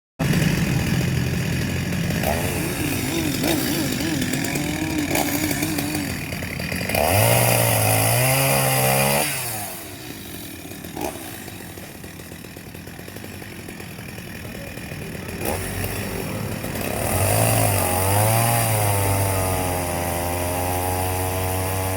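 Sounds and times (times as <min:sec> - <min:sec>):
chainsaw cutting wood: 0:00.2 - 0:21.9.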